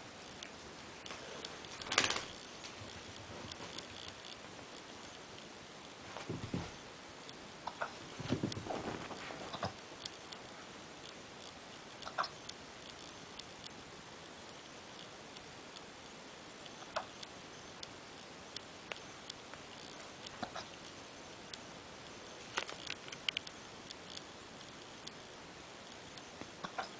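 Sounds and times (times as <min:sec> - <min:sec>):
faint clicks: 0:14.4 - 0:26.9
dog hiccuping: 0:20.4 - 0:20.7.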